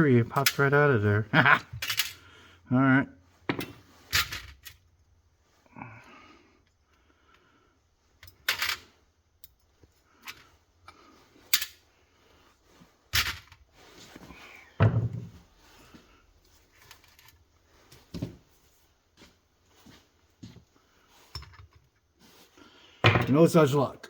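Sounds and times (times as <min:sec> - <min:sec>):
dull thump: 0:14.8 - 0:15.3
metal parts knocking on workbench: 0:14.8 - 0:15.4, 0:23.0 - 0:23.4.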